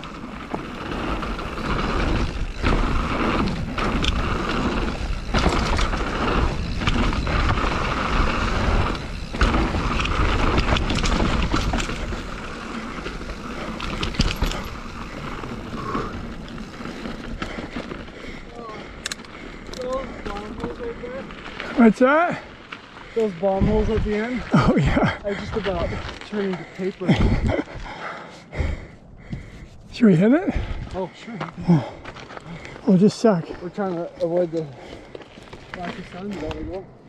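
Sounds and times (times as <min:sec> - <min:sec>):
bike clattering over bumps: 0:00.0 - 0:28.0, 0:30.9 - 0:36.8
bike tyres rolling on dirt: 0:00.0 - 0:37.0
wind rushing over microphone: 0:30.5 - 0:31.0.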